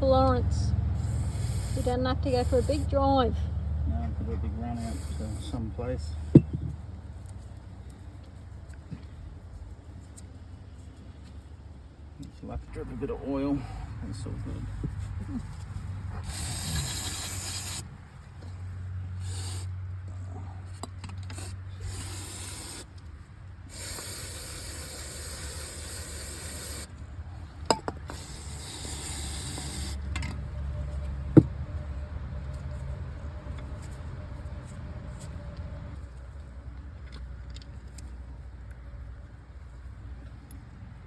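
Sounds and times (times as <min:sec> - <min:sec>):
steady low rumble: 0:00.0 - 0:17.1
hissing spray: 0:01.0 - 0:02.9, 0:04.8 - 0:05.6, 0:16.2 - 0:17.8, 0:19.2 - 0:19.7, 0:21.2 - 0:22.9, 0:23.7 - 0:26.9, 0:28.1 - 0:30.0.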